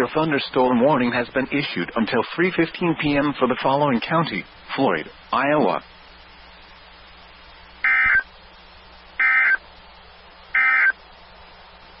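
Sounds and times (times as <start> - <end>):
warbling digital data tone bursts: 7.8 - 8.2, 9.2 - 9.6, 10.6 - 11.0.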